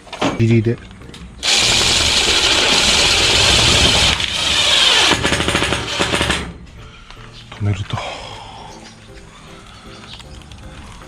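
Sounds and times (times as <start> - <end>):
power tool running: 1.4 - 6.5.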